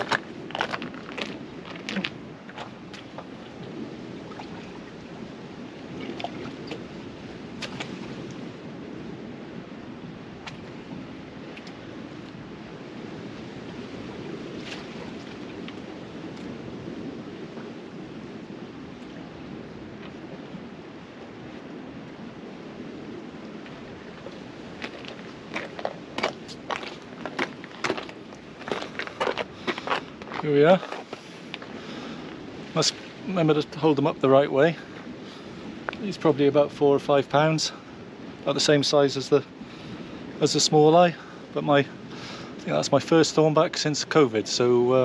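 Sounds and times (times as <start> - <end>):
crunching footsteps: 0.0 - 3.5, 23.6 - 32.4
outdoor noise bed: 0.0 - 36.4
sea surf washing on shore: 0.0 - 45.0.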